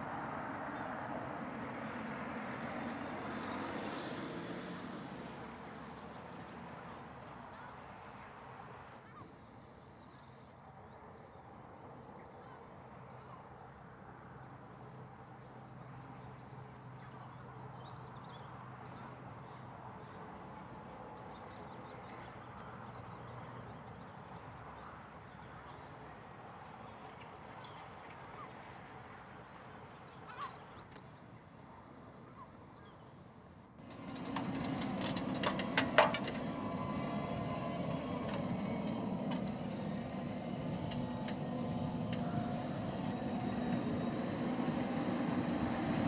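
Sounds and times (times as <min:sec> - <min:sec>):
distant tractor hum: 0:30.3 - 0:46.0.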